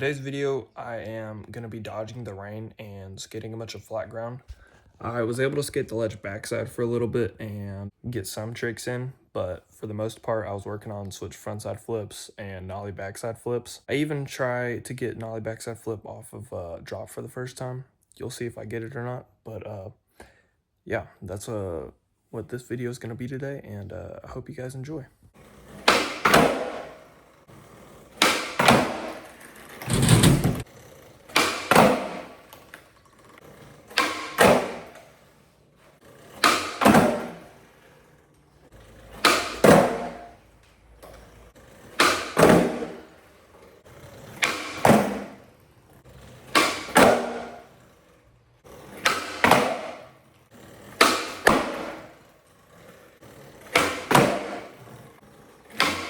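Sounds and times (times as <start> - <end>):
skateboard landing knock: 25.7 - 27.0, 28.2 - 30.6, 31.3 - 32.6, 33.9 - 35.0, 36.4 - 37.5, 39.2 - 40.3, 41.9 - 43.1, 44.3 - 45.4, 46.5 - 47.6, 49.0 - 50.0, 51.0 - 52.1, 53.8 - 54.8, 55.7 - 56.0
skateboard tail pop crack: 25.7 - 27.0, 28.2 - 29.3, 31.3 - 32.8, 33.9 - 35.1, 36.4 - 37.5, 39.2 - 40.3, 41.9 - 43.1, 44.3 - 45.4, 46.5 - 47.6, 49.0 - 50.0, 51.0 - 52.1, 53.8 - 54.8, 55.7 - 56.0.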